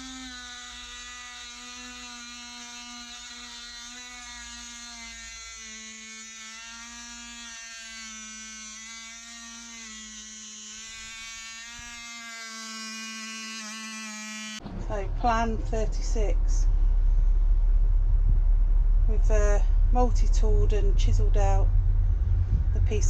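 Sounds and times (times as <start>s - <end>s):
oscillating multi-tool buzzing: 0.0s - 14.6s.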